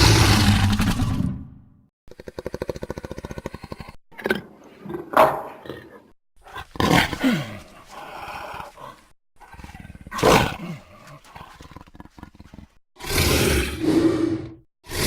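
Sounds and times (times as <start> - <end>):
dinosaur roars: 0.0 - 1.4, 13.0 - 15.0.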